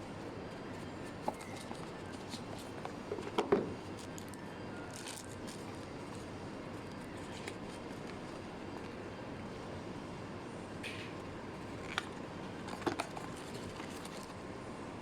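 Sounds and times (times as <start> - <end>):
handling clicks and knocks: 0.5 - 9.0, 11.0 - 14.4.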